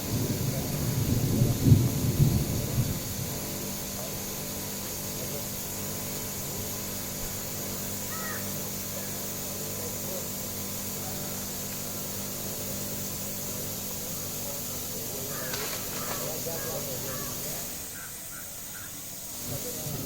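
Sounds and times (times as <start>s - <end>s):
steady low hum and hiss: 0.0s - 20.0s
faint bird calls: 8.0s - 9.2s, 15.2s - 19.1s.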